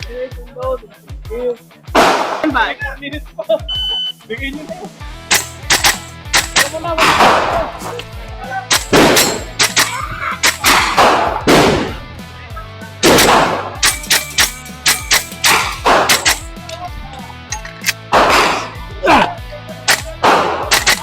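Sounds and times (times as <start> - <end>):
airsoft rifle shots cracking: 5.3 - 7.7, 8.7 - 12.0, 13.0 - 16.7, 19.9 - 21.0
music bed: 12.1 - 21.0.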